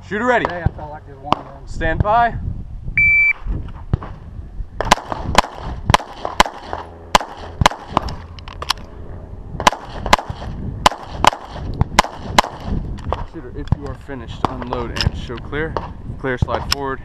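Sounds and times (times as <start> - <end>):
shot timer beep: 3.0 - 3.4
pistol shots: 4.8 - 8.2, 9.6 - 13.3.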